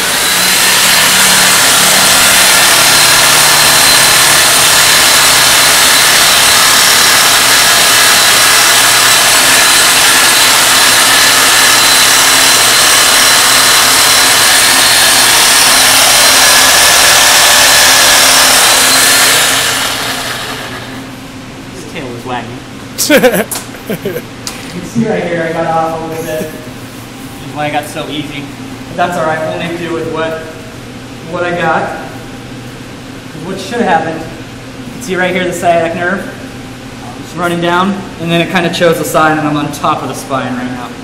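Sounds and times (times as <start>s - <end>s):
electric power saw cutting: 0.0s - 21.1s.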